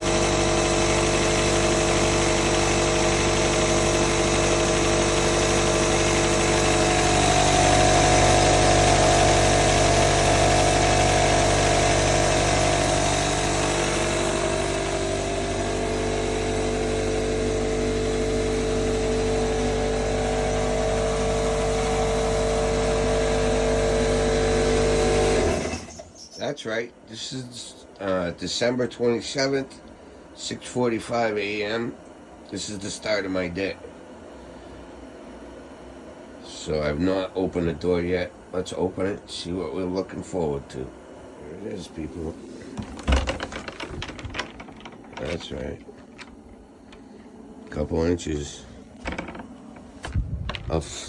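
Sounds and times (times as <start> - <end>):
engine running: 0.0 - 26.4, 41.8 - 51.0.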